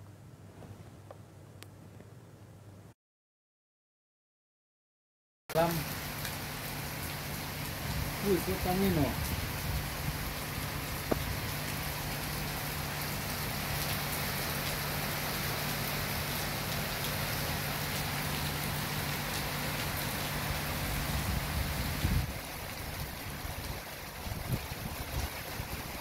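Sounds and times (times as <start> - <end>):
click: 1.1 - 1.7
rain falling: 5.5 - 26.0.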